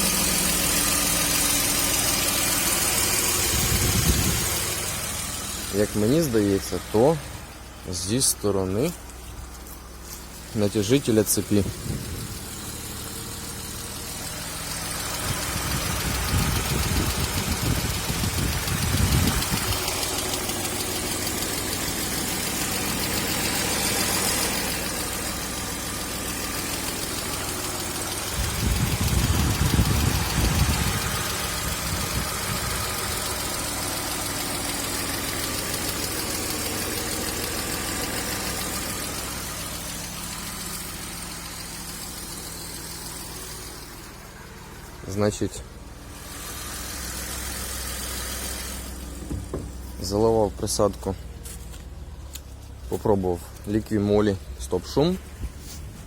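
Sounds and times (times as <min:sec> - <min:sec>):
car engine running: 0:00.0 - 0:56.0
engine tapping: 0:00.0 - 0:56.0.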